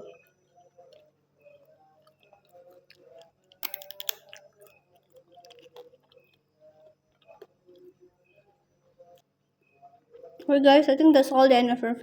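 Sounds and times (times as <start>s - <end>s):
person chewing food: 0.8s - 8.0s.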